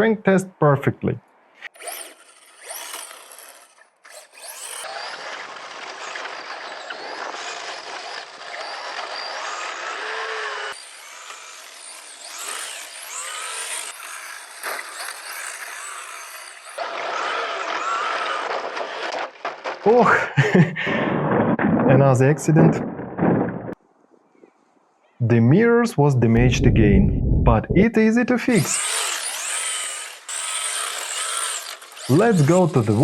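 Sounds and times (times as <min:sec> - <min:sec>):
rc car motor whining: 0:01.6 - 0:19.6, 0:28.6 - 0:33.0.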